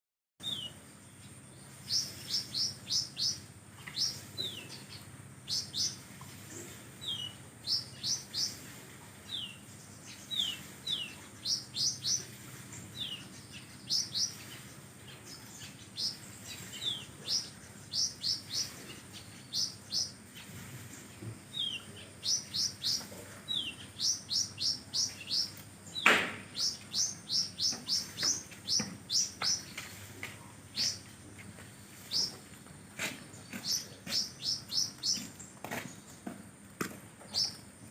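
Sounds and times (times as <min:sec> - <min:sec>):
songbird singing: 0:00.4 - 0:37.9
sharp knock: 0:26.0 - 0:26.5.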